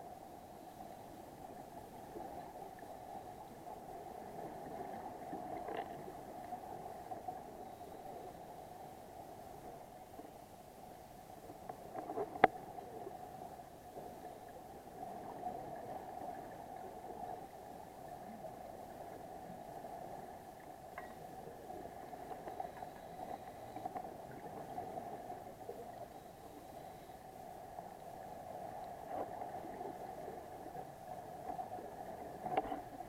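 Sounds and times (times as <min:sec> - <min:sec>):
underwater hum: 0:00.0 - 0:33.0
faint clicks: 0:05.6 - 0:07.3, 0:11.5 - 0:12.6, 0:22.2 - 0:24.7, 0:32.4 - 0:33.0.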